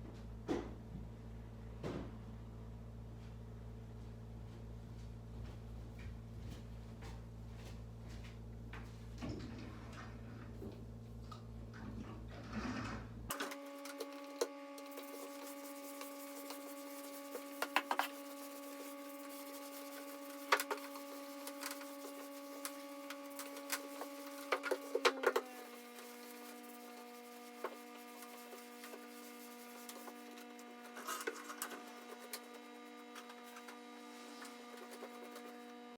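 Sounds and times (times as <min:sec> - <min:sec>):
vacuum cleaner motor whining: 0:13.3 - 0:35.9.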